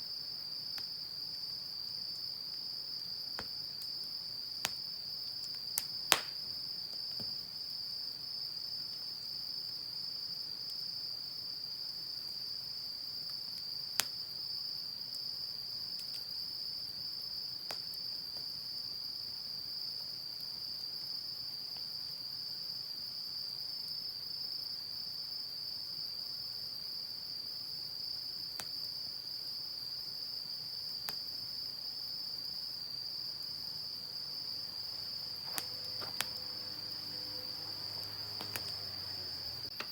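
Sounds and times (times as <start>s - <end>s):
crickets chirring: 0.0s - 39.9s
wood fire popping: 3.3s - 7.4s, 33.2s - 39.9s.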